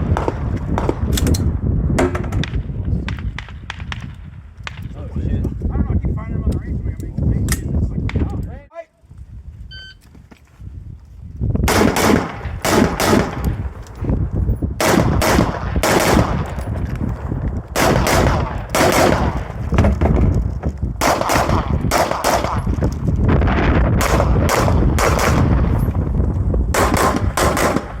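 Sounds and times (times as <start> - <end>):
rapid gunshot bursts: 11.7 - 13.4, 14.8 - 16.6, 17.8 - 19.6, 21.0 - 22.7, 24.0 - 25.6, 26.7 - 28.0.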